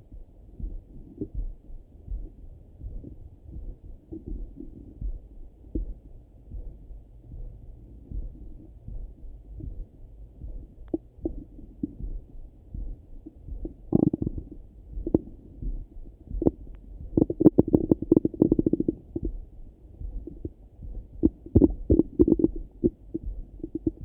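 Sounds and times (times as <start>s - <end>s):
stomach gurgling: 13.6s - 19.5s, 20.2s - 24.0s.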